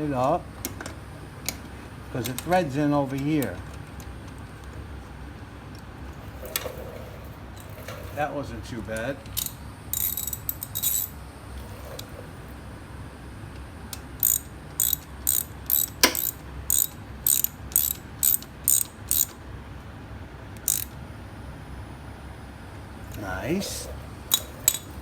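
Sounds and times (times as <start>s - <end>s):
ratchet wrench clicking: 9.3s - 11.2s, 13.9s - 19.4s, 20.6s - 21.0s, 23.1s - 25.0s.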